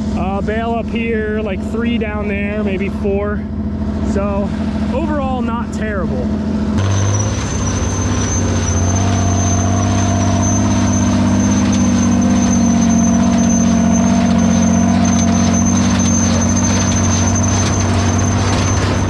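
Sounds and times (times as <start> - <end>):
tractor engine under load: 0.0 - 19.0
high-pitched whine: 4.0 - 19.0.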